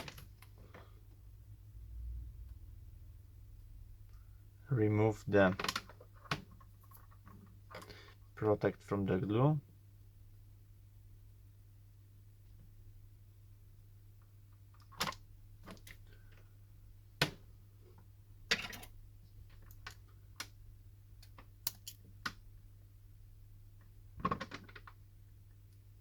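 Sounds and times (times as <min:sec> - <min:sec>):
faint steady hum: 0:00.0 - 0:26.0
small clicks and taps handling tools: 0:21.2 - 0:22.4.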